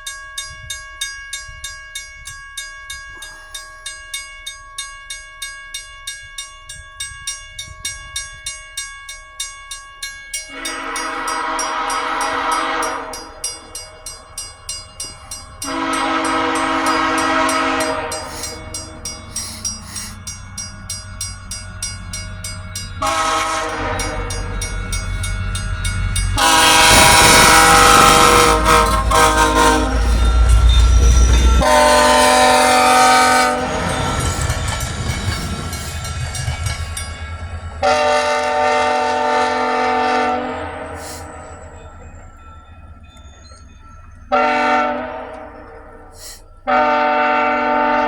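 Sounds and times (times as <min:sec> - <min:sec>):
locomotive air horn blasts: 0:10.5 - 0:13.4, 0:15.6 - 0:18.7, 0:23.0 - 0:24.6, 0:26.3 - 0:30.6, 0:31.6 - 0:33.8, 0:37.8 - 0:41.4, 0:44.3 - 0:48.0.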